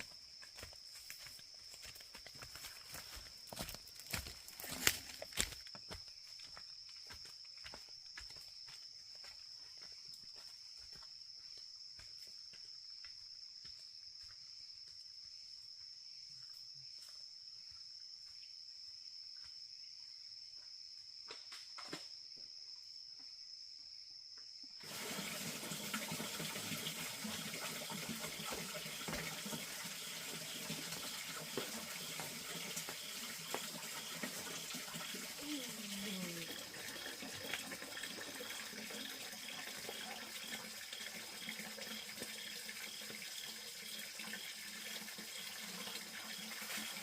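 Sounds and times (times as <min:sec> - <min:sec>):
running splashing water: 0:24.8 - 0:47.0.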